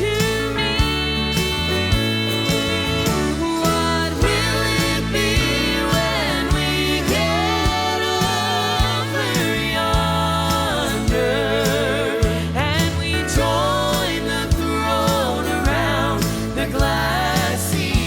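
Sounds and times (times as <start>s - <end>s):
full band accompaniment: 0.0s - 18.0s
gospel singing: 0.0s - 18.0s.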